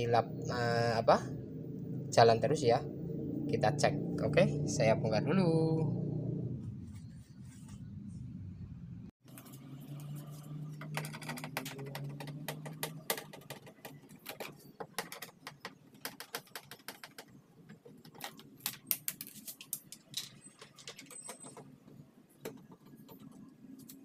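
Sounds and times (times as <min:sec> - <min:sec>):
low hum: 0:00.0 - 0:10.8
tools and plastic parts clicking: 0:10.6 - 0:24.0.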